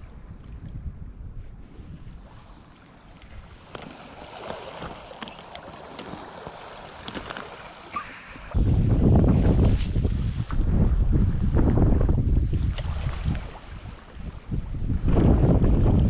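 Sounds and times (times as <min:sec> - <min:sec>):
water: 0:00.0 - 0:16.0
wind: 0:00.0 - 0:16.0
wind buffeting microphone: 0:00.0 - 0:16.0
small clicks and ticks: 0:03.2 - 0:07.7.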